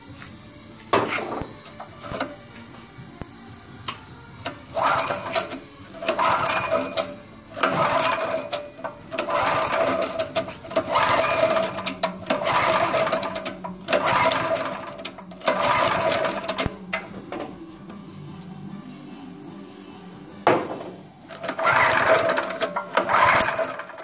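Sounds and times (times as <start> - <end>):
generator recoil starter cranking: 4.4 - 17.1, 21.3 - 24.0.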